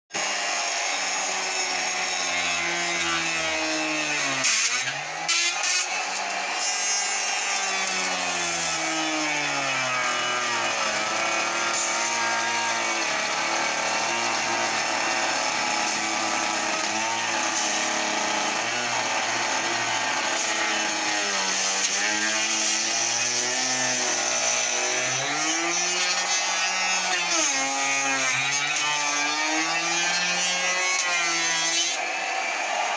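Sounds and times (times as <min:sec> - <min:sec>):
power tool cutting wood: 0:00.1 - 0:32.9.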